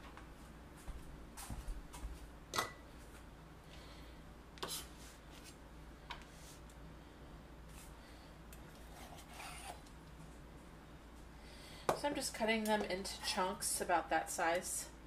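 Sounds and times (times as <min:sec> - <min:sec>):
knife cutting on a board: 0:08.9 - 0:09.8.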